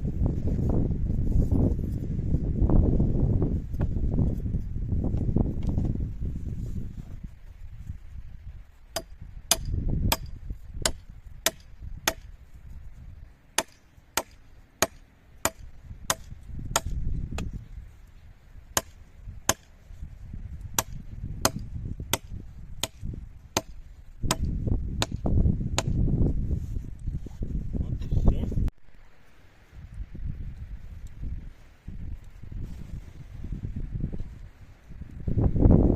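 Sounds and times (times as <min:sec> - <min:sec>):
wind rumbling on microphone: 0:00.0 - 0:35.9
hand tool striking: 0:08.9 - 0:12.3, 0:13.6 - 0:17.5, 0:18.8 - 0:19.7, 0:20.8 - 0:25.2.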